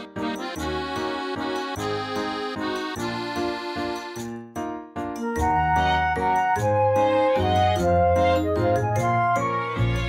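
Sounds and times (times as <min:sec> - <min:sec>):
instrumental music with chiming notes: 0:00.2 - 0:10.0.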